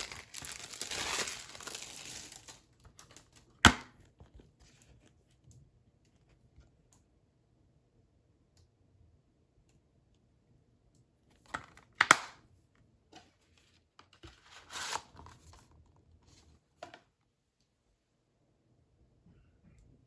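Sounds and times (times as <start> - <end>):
packaging rustling scrape: 0.0 - 3.2, 14.3 - 15.6
packaging snapping: 0.0 - 3.8.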